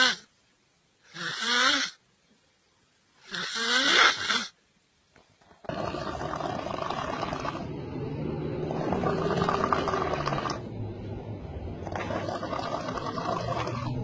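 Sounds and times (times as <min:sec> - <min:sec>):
person snoring: 0:05.7 - 0:10.6.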